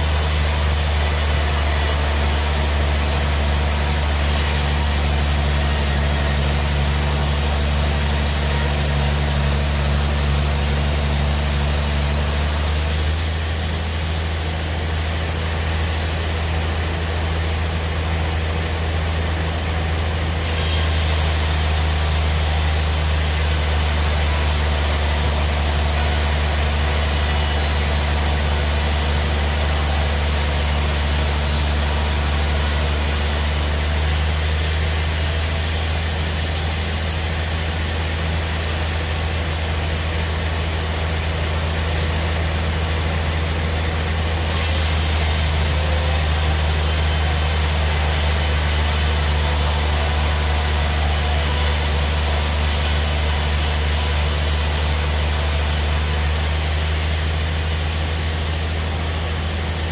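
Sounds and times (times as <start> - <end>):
sawmill machinery drone: 0.0 - 59.9
machine hiss: 20.4 - 33.8, 44.4 - 56.4.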